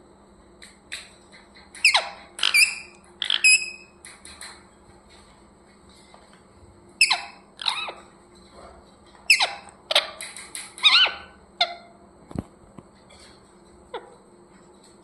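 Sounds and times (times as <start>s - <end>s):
parrot chirping: 1.8s - 4.0s, 7.0s - 8.1s, 9.3s - 12.0s.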